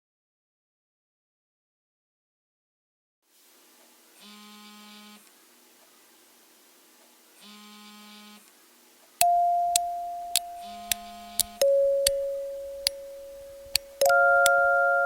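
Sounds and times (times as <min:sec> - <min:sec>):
held keyboard notes: 0:09.2 - 0:15.0
light ticking beat: 0:09.2 - 0:15.0
buzzy synth note: 0:10.1 - 0:15.0.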